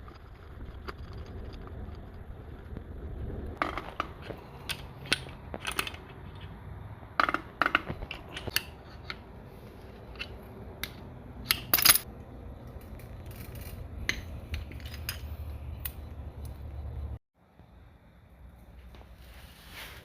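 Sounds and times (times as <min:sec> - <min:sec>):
low hum: 0:00.0 - 0:19.4
metal tools clinking: 0:11.4 - 0:16.8.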